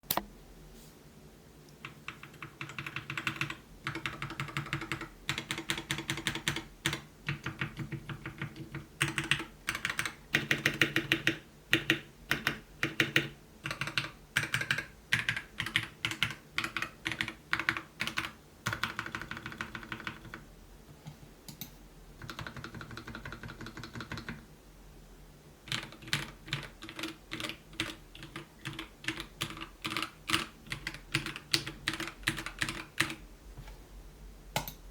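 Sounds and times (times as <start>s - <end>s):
mechanical keyboard typing: 1.8s - 20.4s, 21.5s - 24.4s, 25.7s - 33.2s.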